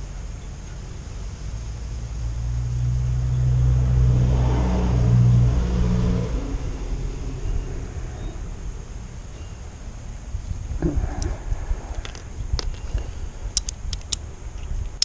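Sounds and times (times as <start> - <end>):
vehicle engine passing by: 2.7 - 7.4.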